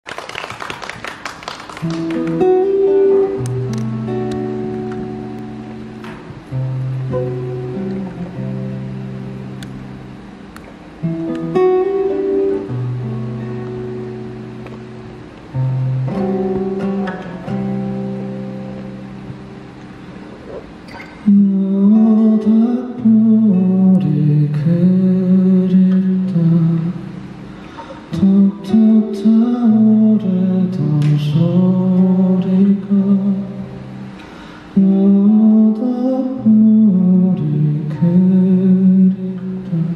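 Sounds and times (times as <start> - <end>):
acoustic guitar plucked notes: 1.8 - 39.9
man singing: 21.2 - 27.2, 28.1 - 33.9, 34.8 - 39.9.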